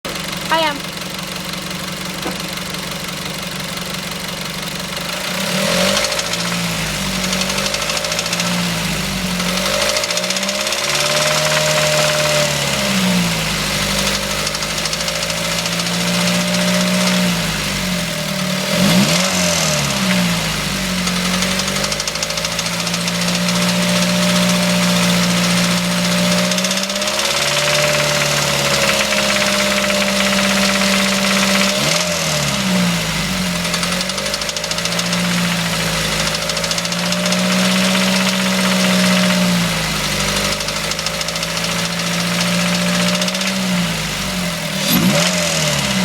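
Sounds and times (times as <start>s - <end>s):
car engine revving: 0.0s - 46.0s
engine ticking and rattling: 0.0s - 46.0s.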